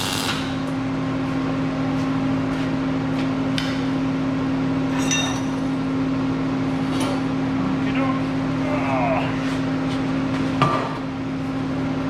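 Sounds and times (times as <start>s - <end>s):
steady mechanical hum: 0.0s - 12.0s
ringing metallic clink: 5.0s - 5.6s.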